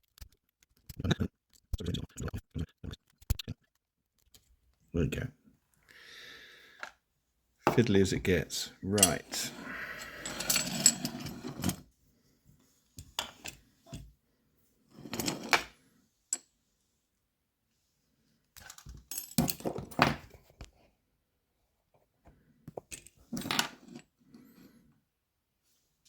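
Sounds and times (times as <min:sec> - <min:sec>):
metal parts clinking and scraping: 0:08.9 - 0:11.8, 0:15.0 - 0:15.8, 0:22.9 - 0:24.0.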